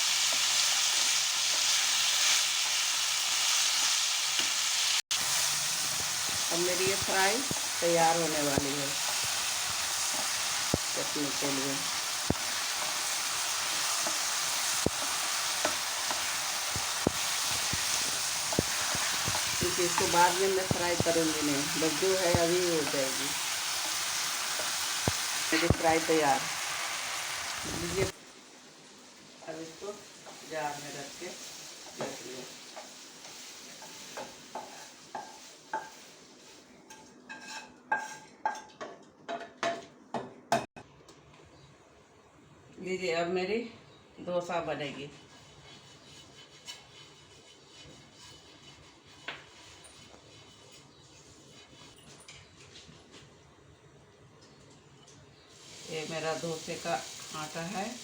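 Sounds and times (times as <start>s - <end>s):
vegetables sizzling in hot oil: 0.0s - 38.2s, 55.4s - 58.0s.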